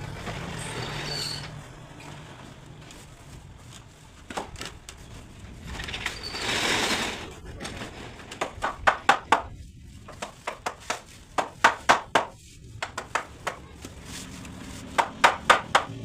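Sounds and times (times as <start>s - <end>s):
sharp knocks on wood: 15.0s - 16.0s.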